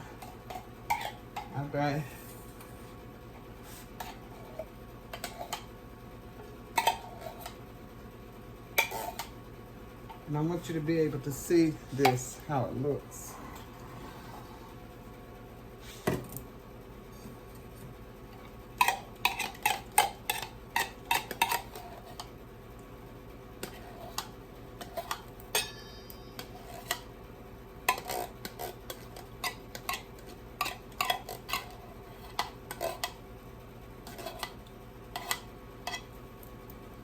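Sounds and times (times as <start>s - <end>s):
spoon scraping mixing bowl: 0.1s - 1.6s, 18.8s - 22.4s, 27.9s - 33.2s, 34.0s - 36.2s.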